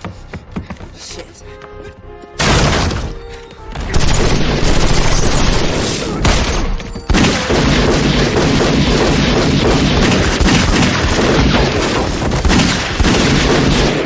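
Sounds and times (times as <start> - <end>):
film score music: 0.0 - 14.0
rapid gunfire: 3.9 - 14.0.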